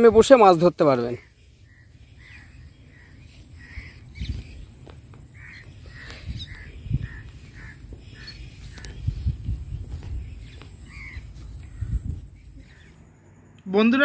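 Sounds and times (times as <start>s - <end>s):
crows cawing: 1.1s - 9.3s, 10.2s - 13.2s.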